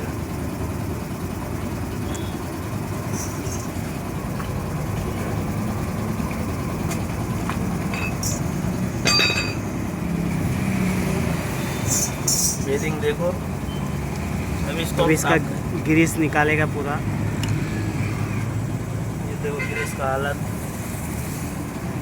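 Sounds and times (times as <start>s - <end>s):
vehicle rumble: 0.0s - 22.0s
sharp ringing clink: 9.0s - 9.7s.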